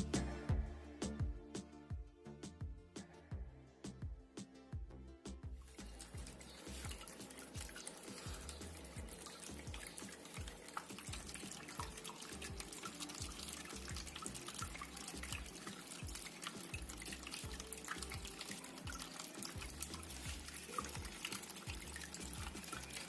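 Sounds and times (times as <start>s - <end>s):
water trickling in indoor fountain: 5.6s - 23.0s.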